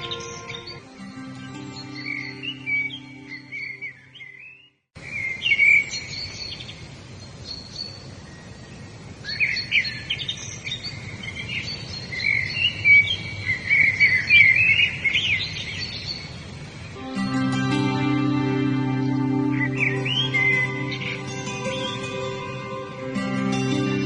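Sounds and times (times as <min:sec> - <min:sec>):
soft music: 0:00.0 - 0:04.6, 0:17.0 - 0:24.0
songbirds chirping: 0:00.0 - 0:24.0.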